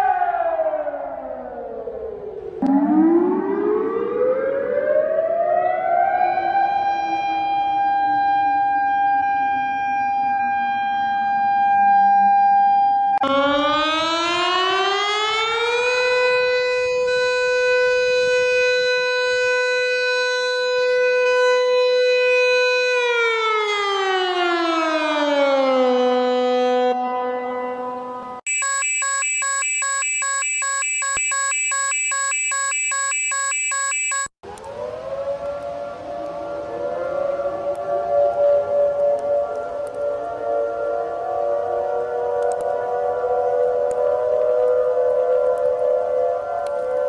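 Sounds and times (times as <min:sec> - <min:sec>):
civil defense siren wailing: 0:00.0 - 0:47.0.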